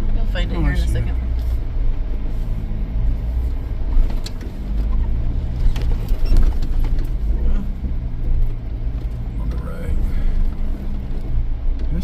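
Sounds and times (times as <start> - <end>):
car engine humming inside cabin: 0.0 - 12.0
sharp knocks and rattles: 3.9 - 7.3.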